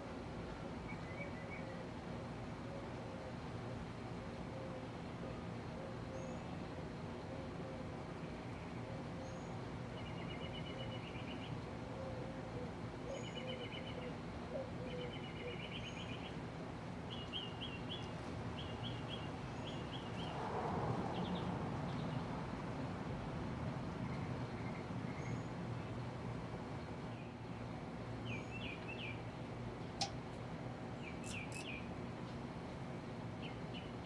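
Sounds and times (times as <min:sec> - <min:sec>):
steady background hum: 0:00.0 - 0:34.0
small birds chirping: 0:31.0 - 0:31.9.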